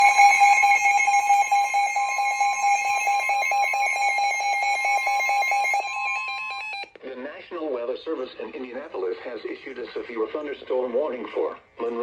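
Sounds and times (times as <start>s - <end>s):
two-tone alarm signal: 0.0s - 6.9s.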